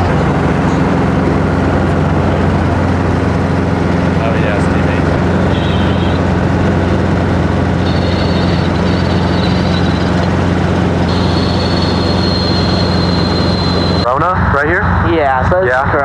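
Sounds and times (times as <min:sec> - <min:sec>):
helicopter rotor and engine drone: 0:00.0 - 0:16.0
thin high whine: 0:07.7 - 0:14.1.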